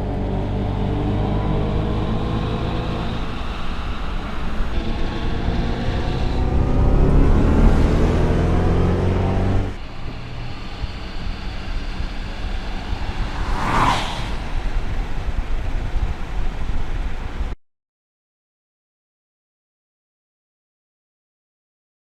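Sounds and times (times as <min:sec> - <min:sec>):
electric car drive tone: 0:00.0 - 0:17.2
road noise: 0:00.0 - 0:17.6.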